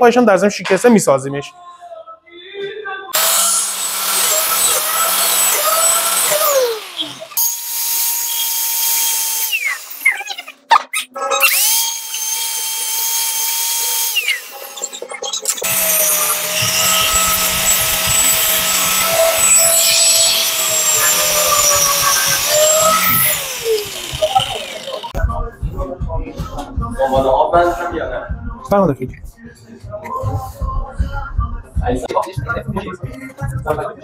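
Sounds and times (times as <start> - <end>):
power tool whining: 3.2 - 10.2, 11.4 - 15.0, 15.6 - 25.2.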